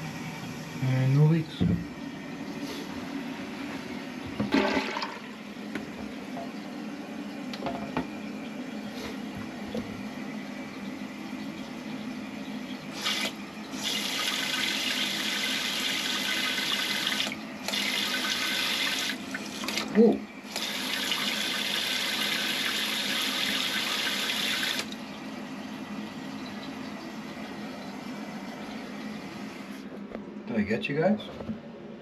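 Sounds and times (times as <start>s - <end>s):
toilet flushing: 4.2s - 6.0s, 12.9s - 25.1s
water running into tank: 4.3s - 6.7s, 12.9s - 25.3s.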